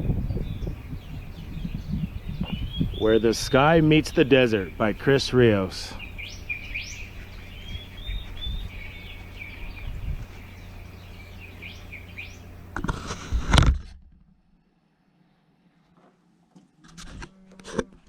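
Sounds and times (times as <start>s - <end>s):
small birds chirping: 0.0s - 13.2s
steady low rumble: 0.0s - 13.6s.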